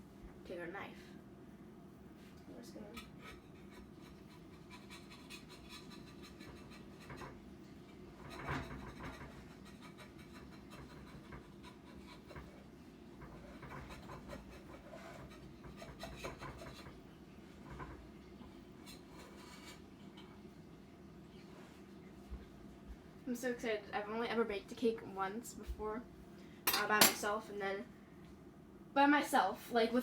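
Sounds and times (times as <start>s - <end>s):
knife scraping metal cake pan: 3.0s - 7.4s, 8.2s - 12.6s, 13.2s - 17.0s, 18.8s - 19.9s.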